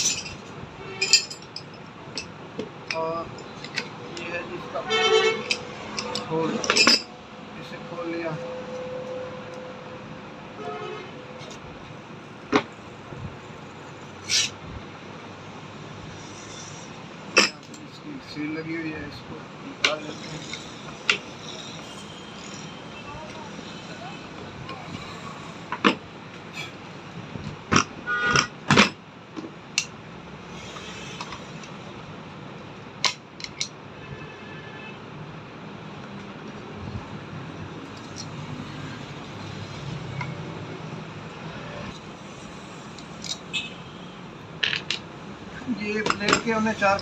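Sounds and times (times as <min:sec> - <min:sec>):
hand tools clinking on metal: 0:00.0 - 0:02.3, 0:05.4 - 0:07.1, 0:46.0 - 0:47.0
metal parts ringing: 0:00.0 - 0:02.3, 0:05.4 - 0:07.1.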